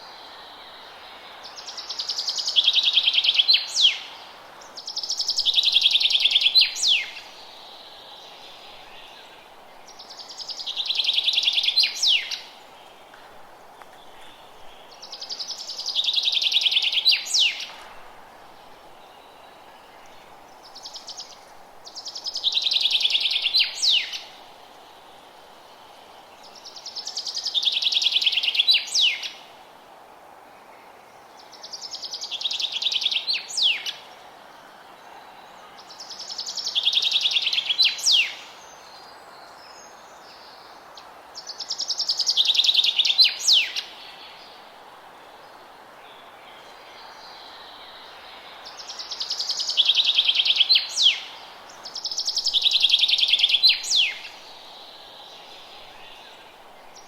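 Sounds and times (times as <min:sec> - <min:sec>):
faint steady hiss: 0:00.0 - 0:57.0.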